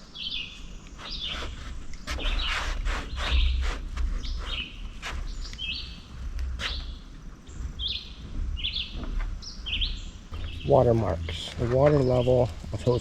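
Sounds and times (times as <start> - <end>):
bird chirping: 0.0 - 13.0
low rumble: 7.4 - 13.0.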